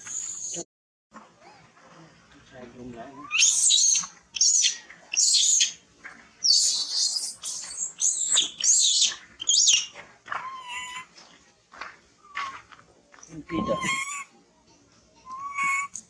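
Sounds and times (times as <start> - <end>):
macaque squealing calls: 0.1 - 0.6, 3.2 - 5.8, 6.4 - 11.0, 13.4 - 14.3, 15.2 - 16.0
macaque lower call: 3.2 - 5.8, 6.4 - 11.1, 13.4 - 14.3, 15.2 - 16.0.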